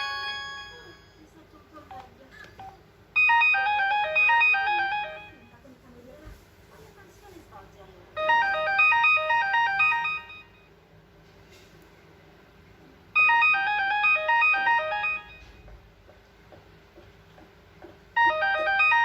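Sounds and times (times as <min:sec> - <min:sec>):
electronic ringtone melody: 0:00.0 - 0:01.3, 0:03.2 - 0:05.5, 0:08.2 - 0:10.7, 0:13.2 - 0:15.6, 0:18.2 - 0:19.0.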